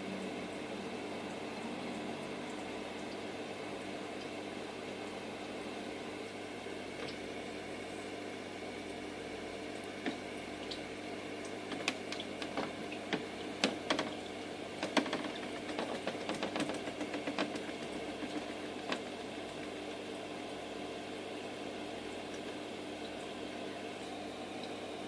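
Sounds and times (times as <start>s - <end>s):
aquarium equipment hum: 0.0s - 25.0s
water burbling: 8.6s - 25.0s
sharp clicks and taps: 14.8s - 19.2s.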